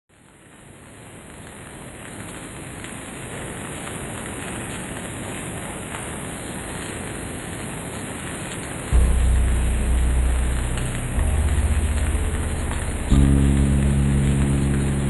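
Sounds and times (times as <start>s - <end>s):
steady rainfall: 0.1s - 15.0s.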